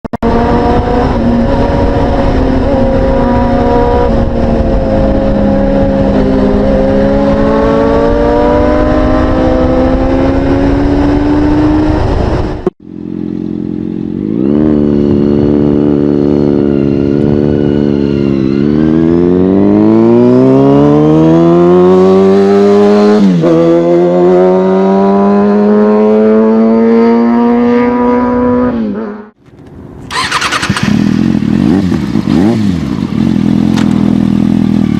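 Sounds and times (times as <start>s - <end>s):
motorcycle engine accelerating: 0.2s - 29.4s, 30.1s - 34.9s.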